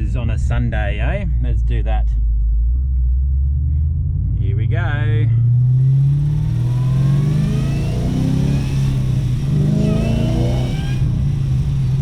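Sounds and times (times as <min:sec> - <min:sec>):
supercharger whine: 0:02.3 - 0:12.0
supercharged engine accelerating: 0:03.4 - 0:12.0.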